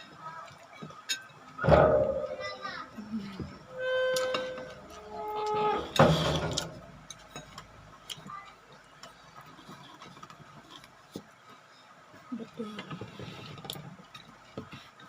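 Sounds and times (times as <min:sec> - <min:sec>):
chewing clicks and crunches: 0:07.1 - 0:11.4.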